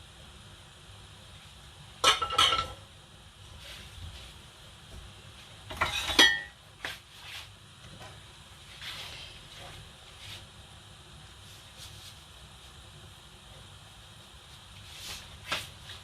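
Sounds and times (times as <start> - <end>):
dishes and utensils clattering: 2.0 - 2.8, 5.7 - 6.6.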